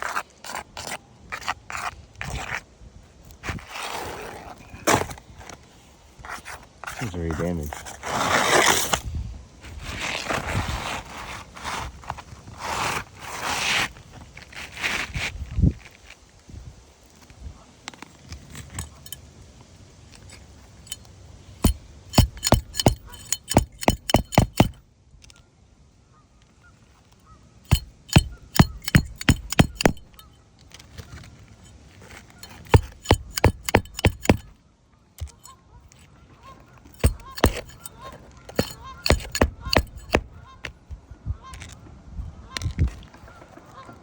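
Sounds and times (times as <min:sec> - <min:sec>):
hammer striking shingle roof: 0:21.6 - 0:24.8, 0:27.7 - 0:30.2, 0:32.4 - 0:34.5, 0:35.2 - 0:35.5, 0:37.0 - 0:37.9, 0:38.5 - 0:40.4.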